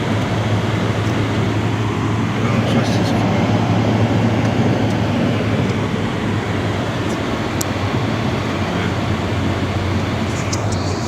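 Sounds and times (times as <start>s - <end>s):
car cabin engine hum: 0.0s - 11.0s
tyres hissing on snowy road: 5.1s - 11.0s.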